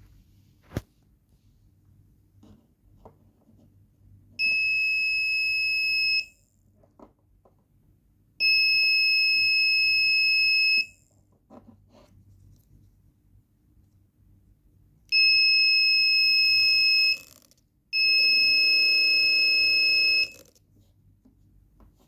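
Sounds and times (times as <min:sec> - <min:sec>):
buzzer beeping high-pitched: 0:15.1 - 0:17.4, 0:18.0 - 0:20.5.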